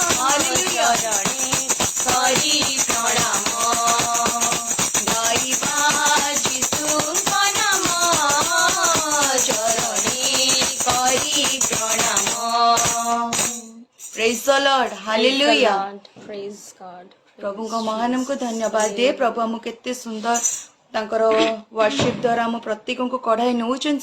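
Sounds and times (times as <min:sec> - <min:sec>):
tambourine rhythm: 0:00.0 - 0:15.0, 0:18.2 - 0:19.0, 0:20.3 - 0:20.7.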